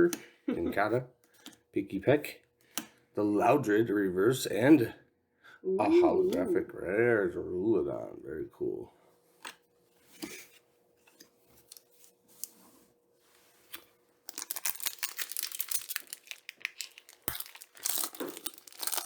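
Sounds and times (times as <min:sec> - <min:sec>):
foil wrapper crinkling and tearing: 0:14.2 - 0:19.0.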